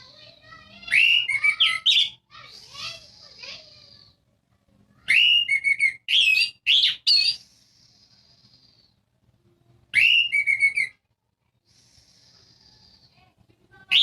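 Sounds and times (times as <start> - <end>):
thrush singing whistled phrases: 0.8 - 2.2, 5.1 - 7.6, 9.9 - 11.0.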